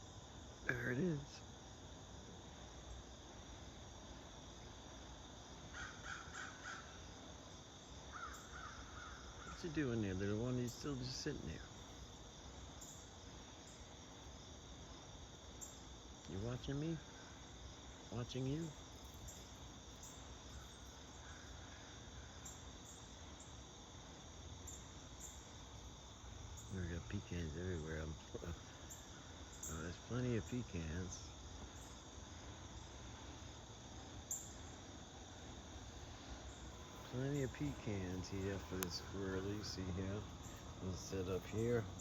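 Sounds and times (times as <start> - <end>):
crickets chirring: 0.0 - 42.0
low background hum: 0.0 - 42.0
crows cawing: 5.7 - 7.0, 8.1 - 9.6.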